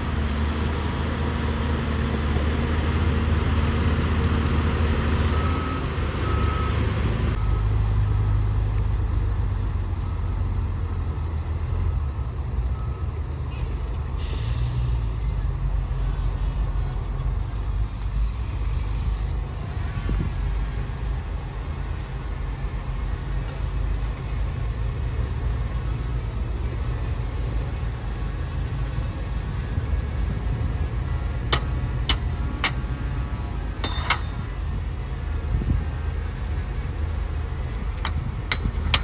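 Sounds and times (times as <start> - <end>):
heavy machinery diesel engines rumbling: 0.0 - 39.0
sharp metal clanks: 33.8 - 34.6, 38.0 - 39.0.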